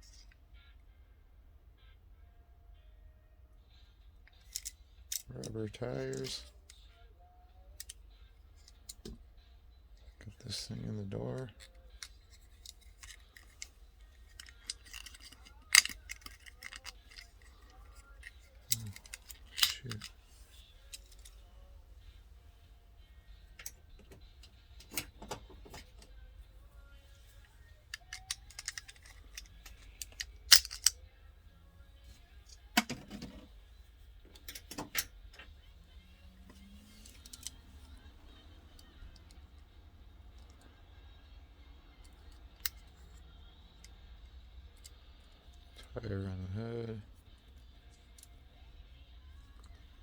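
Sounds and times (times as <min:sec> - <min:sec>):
toy car clicks and taps: 0:04.4 - 0:05.2, 0:11.6 - 0:13.7, 0:14.3 - 0:20.1, 0:27.9 - 0:31.0, 0:37.0 - 0:37.6.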